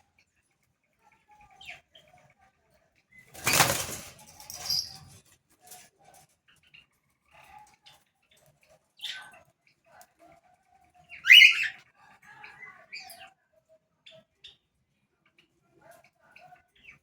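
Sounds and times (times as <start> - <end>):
bird chirping softly: 0.0 - 10.3, 11.0 - 17.0
wings flapping: 3.3 - 5.2.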